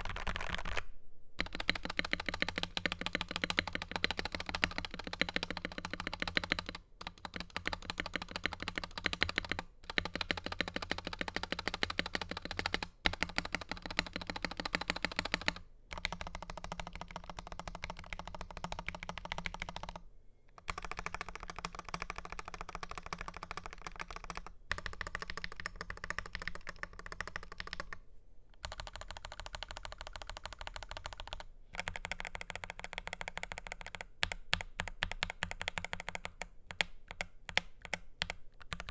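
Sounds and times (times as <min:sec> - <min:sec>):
mechanical keyboard typing: 0:00.0 - 0:00.8, 0:01.4 - 0:20.0, 0:20.6 - 0:28.0, 0:28.6 - 0:38.9.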